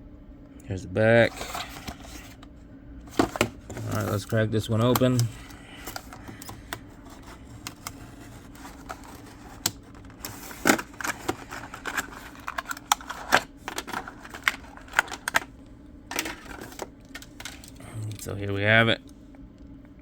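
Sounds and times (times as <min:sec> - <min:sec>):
faint low hum: 0:00.0 - 0:20.0
plastic blister package crackling: 0:03.1 - 0:15.5, 0:16.1 - 0:17.8.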